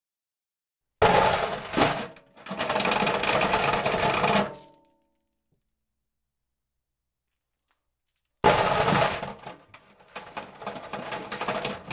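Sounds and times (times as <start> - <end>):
metal chain dragging and clinking: 1.3 - 4.8, 8.5 - 11.9.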